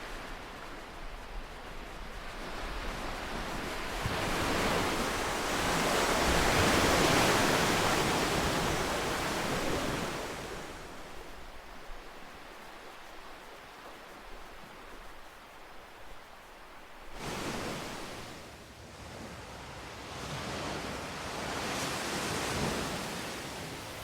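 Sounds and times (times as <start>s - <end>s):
ocean wave surging: 3.7s - 18.4s.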